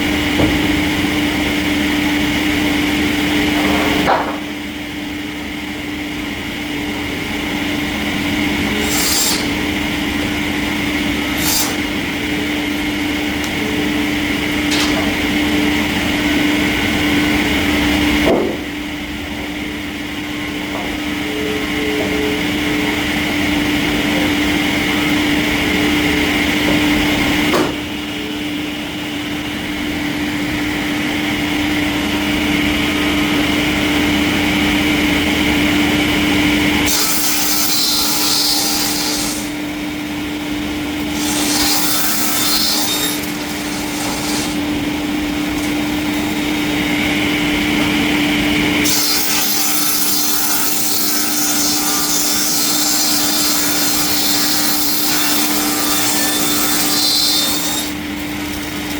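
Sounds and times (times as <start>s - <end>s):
steady machine hum: 0.0s - 58.9s
saw cutting through timber: 8.1s - 17.4s, 36.8s - 39.6s, 41.0s - 58.9s.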